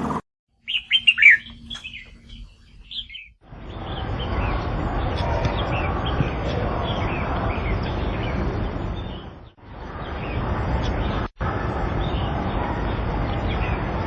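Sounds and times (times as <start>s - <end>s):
small birds chirping: 0.6s - 11.3s.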